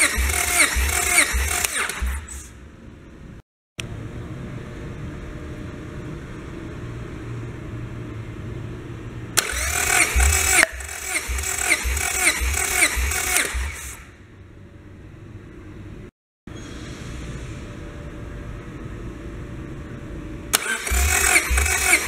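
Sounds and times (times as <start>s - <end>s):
engine revving blips: 0.0s - 2.6s, 9.3s - 14.2s, 20.5s - 22.0s.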